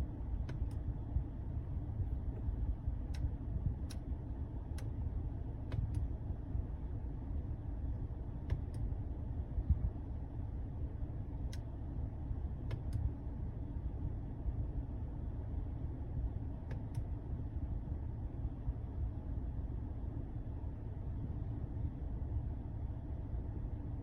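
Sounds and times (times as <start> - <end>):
car rumble: 0.0 - 14.8.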